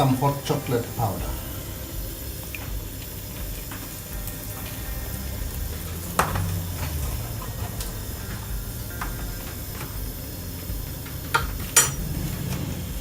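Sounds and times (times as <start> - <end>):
milk hissing in a saucepan: 0.0 - 13.0.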